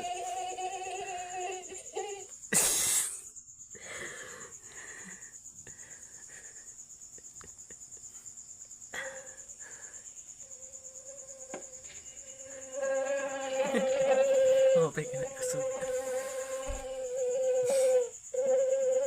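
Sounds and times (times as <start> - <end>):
mosquito whine: 0.0 - 3.2, 8.9 - 19.0
loud breathy burst: 2.5 - 6.1, 17.6 - 18.0.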